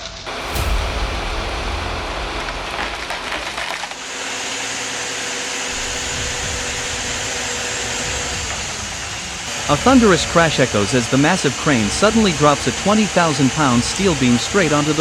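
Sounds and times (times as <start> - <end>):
high-pitched machine noise: 0.0 - 15.0.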